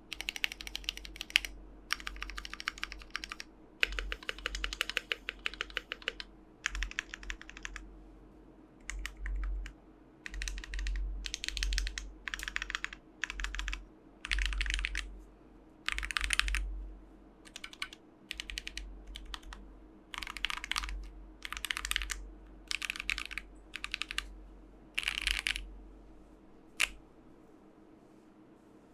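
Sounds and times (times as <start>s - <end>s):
mechanical keyboard typing: 0.1s - 7.8s, 8.8s - 15.1s, 15.9s - 16.6s, 17.5s - 24.3s, 25.0s - 25.6s, 26.8s - 27.0s.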